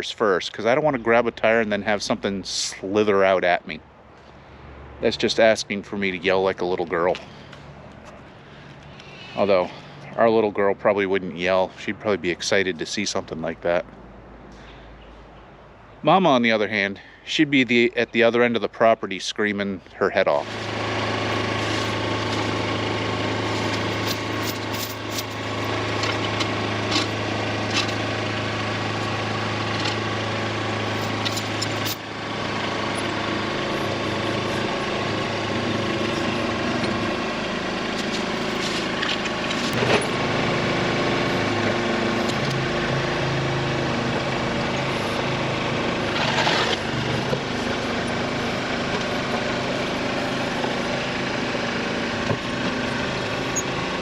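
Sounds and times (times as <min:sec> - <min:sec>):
diesel tractor engine running: 0:20.2 - 0:54.0.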